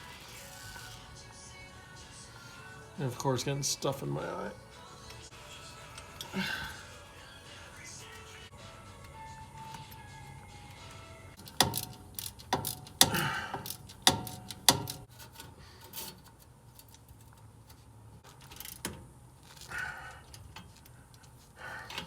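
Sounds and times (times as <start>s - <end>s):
hand tools clicking on metal: 11.4s - 17.0s.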